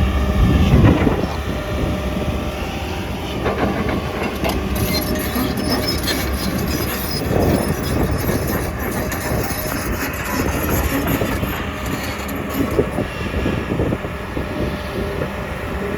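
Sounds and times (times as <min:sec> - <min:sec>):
excavator diesel engine running: 0:00.0 - 0:14.2
metal knocks and rattling: 0:03.3 - 0:13.1.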